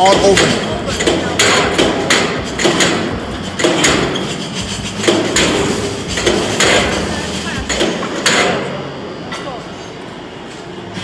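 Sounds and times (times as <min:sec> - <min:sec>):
metallic bangs and knocks: 0:00.0 - 0:08.8
low machine hum: 0:00.0 - 0:11.0.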